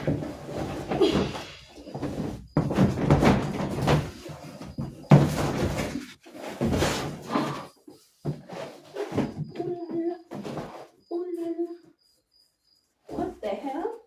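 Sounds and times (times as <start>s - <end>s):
plastic parts knocking and scraping: 0.0s - 10.9s.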